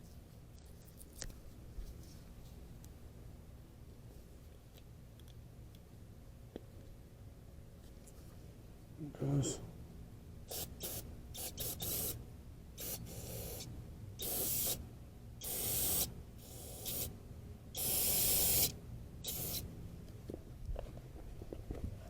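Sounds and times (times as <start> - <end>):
aerosol spray bursts: 10.5 - 12.2, 12.8 - 14.8, 15.4 - 17.1, 17.8 - 19.6.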